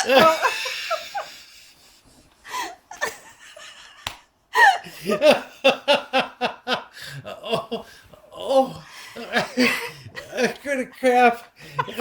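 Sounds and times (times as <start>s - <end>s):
person laughing hard: 0.0s - 1.8s, 8.5s - 10.6s, 11.6s - 12.0s.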